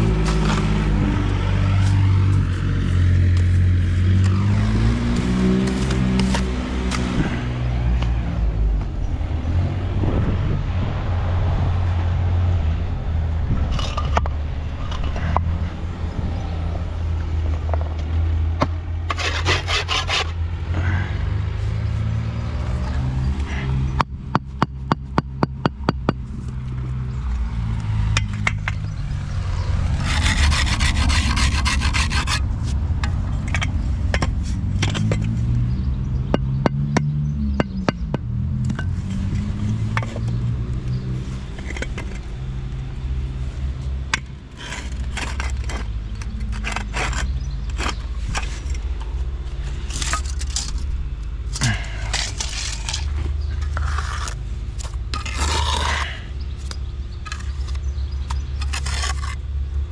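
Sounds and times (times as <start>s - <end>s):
harsh scraping noise: 19.1s - 20.4s, 29.8s - 32.8s, 51.6s - 56.2s.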